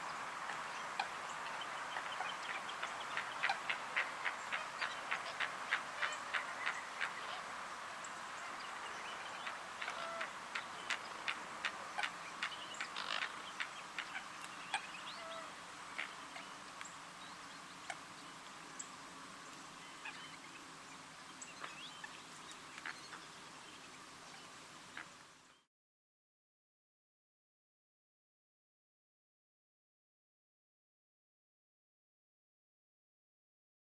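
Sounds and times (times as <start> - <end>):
steady hiss: 0.0 - 25.7.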